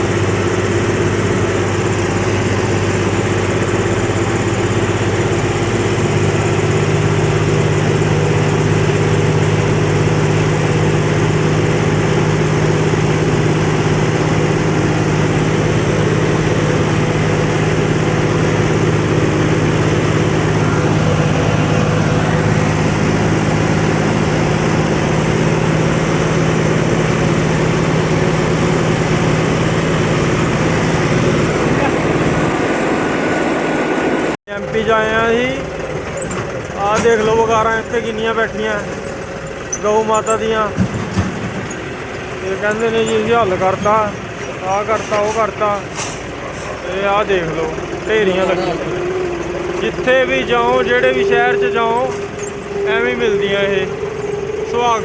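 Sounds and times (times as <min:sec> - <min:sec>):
heavy diesel engine running: 0:00.0 - 0:55.0.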